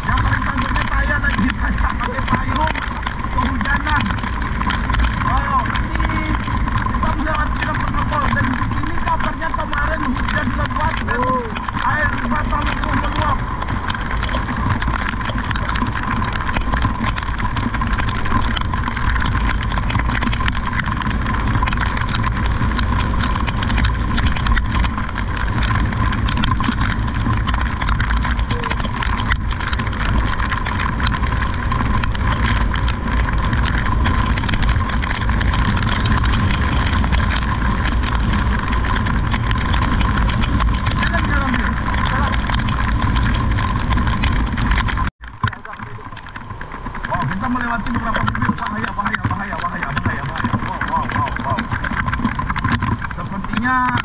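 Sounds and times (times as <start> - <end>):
vehicle engine and traffic noise: 0.0 - 54.0.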